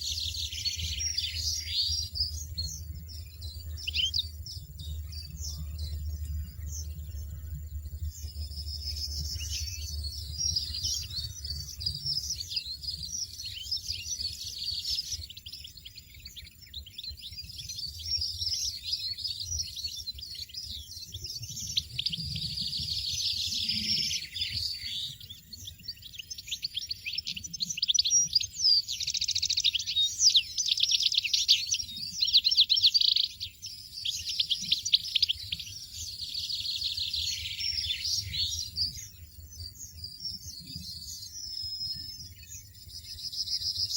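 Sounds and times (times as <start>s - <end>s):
goldfinches twittering: 0.0s - 43.9s
faint low rumble: 2.3s - 13.3s.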